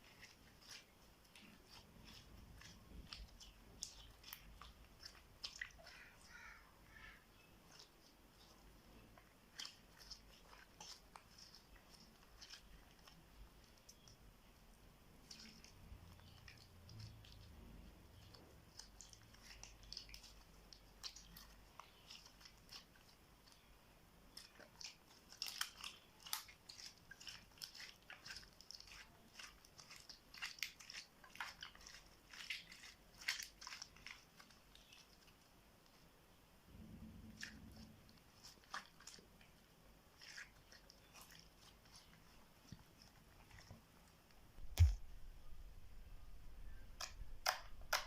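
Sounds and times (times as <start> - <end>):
slime crackling and popping: 0.0 - 14.2, 24.3 - 35.4, 47.0 - 48.0.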